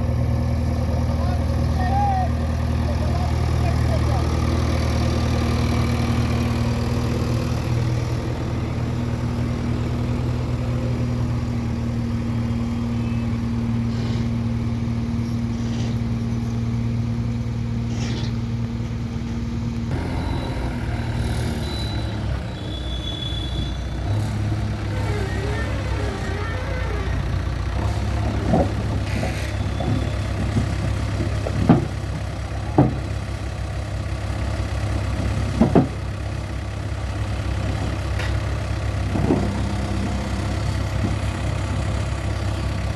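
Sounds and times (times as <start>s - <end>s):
diesel engine running: 0.0s - 42.9s.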